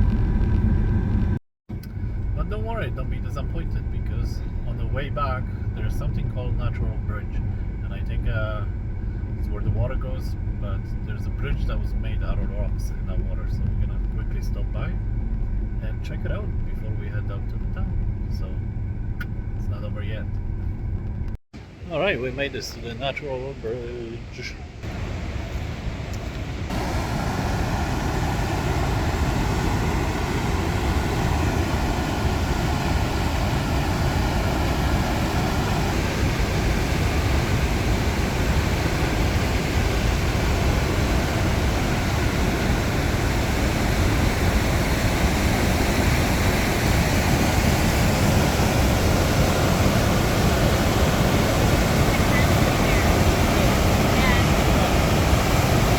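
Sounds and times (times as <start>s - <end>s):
river rushing over rocks: 26.7s - 35.7s.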